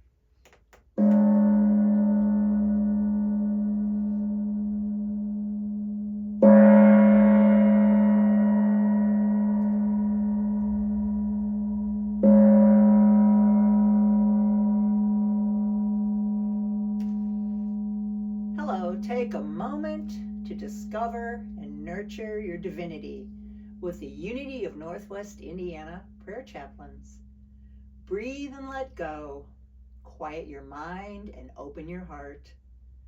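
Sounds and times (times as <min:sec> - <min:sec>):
singing bowl ringing: 0:01.0 - 0:28.4.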